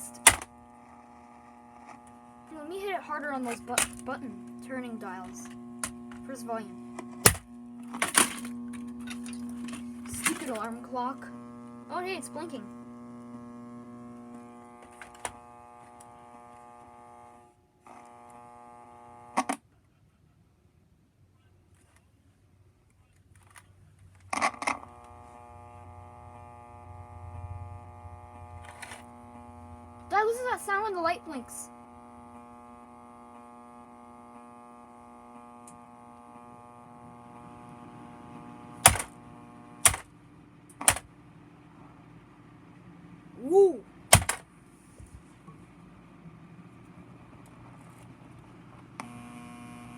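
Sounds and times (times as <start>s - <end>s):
sharp clicks: 0.0s - 0.6s, 7.0s - 10.6s, 38.8s - 39.2s, 39.8s - 40.1s, 40.7s - 41.1s, 44.1s - 44.4s
alarm clock electric buzz: 0.0s - 19.6s, 24.3s - 41.2s, 44.1s - 44.4s, 49.0s - 49.9s.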